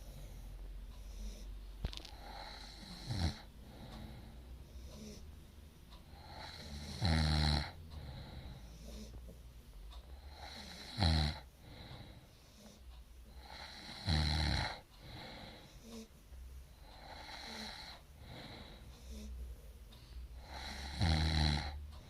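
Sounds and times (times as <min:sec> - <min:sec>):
quiet breathing: 0:00.0 - 0:22.0
person snoring: 0:01.0 - 0:05.2, 0:06.1 - 0:09.1, 0:10.2 - 0:12.7, 0:13.3 - 0:16.1, 0:16.8 - 0:19.3, 0:20.4 - 0:21.8.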